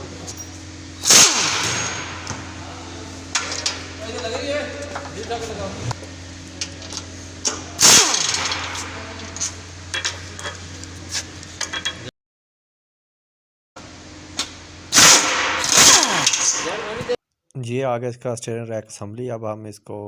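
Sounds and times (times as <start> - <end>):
steady low hum: 0.0 - 12.1.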